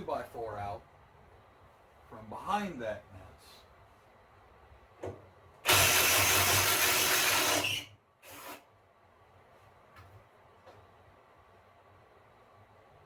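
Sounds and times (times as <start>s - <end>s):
handheld power tool running: 5.6s - 8.6s.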